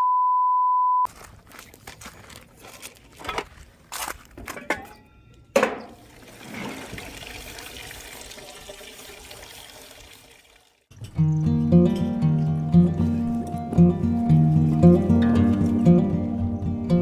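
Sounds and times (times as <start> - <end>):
water running: 5.6 - 16.8.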